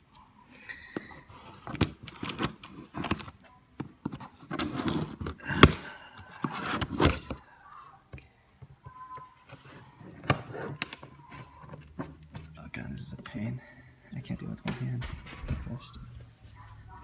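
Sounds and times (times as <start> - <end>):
cardboard box scraping and rustling: 4.3 - 5.4.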